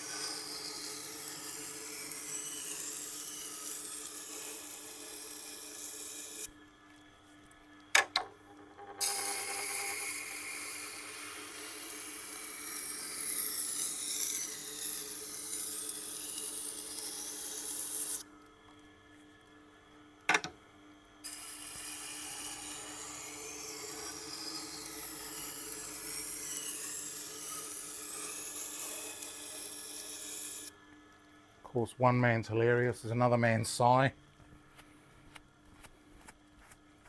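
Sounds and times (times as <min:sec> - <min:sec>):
knife blade grinding on wheel: 0:00.0 - 0:06.5, 0:08.8 - 0:18.2, 0:21.3 - 0:30.7
sharpening machine hum: 0:00.0 - 0:06.5, 0:08.4 - 0:18.3, 0:21.2 - 0:30.8.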